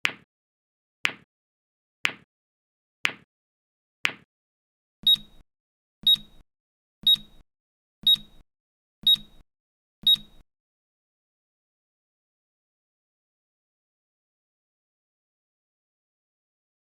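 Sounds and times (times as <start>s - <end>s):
sharp click of timer: 5.0s - 5.4s, 6.0s - 6.4s, 7.0s - 7.4s, 8.0s - 8.4s, 9.0s - 9.4s, 10.0s - 10.4s
short high electronic beeps: 5.0s - 5.4s, 6.0s - 6.4s, 7.0s - 7.4s, 8.0s - 8.4s, 9.0s - 9.4s, 10.0s - 10.4s.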